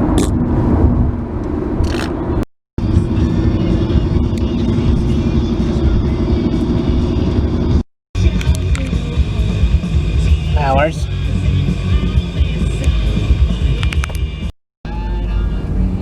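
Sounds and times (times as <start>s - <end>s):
car cabin road noise: 0.0s - 16.0s
music playing: 2.8s - 15.6s.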